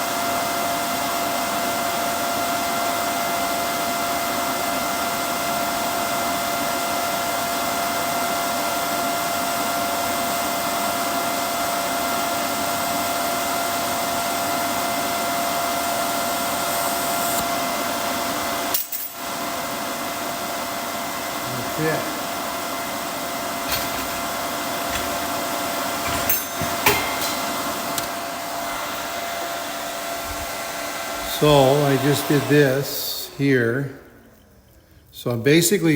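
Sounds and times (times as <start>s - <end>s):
welder whining tone: 14.4s - 19.5s, 21.0s - 35.6s
welding arc hissing: 15.8s - 17.7s, 23.3s - 35.0s
steady machine noise: 23.4s - 35.1s.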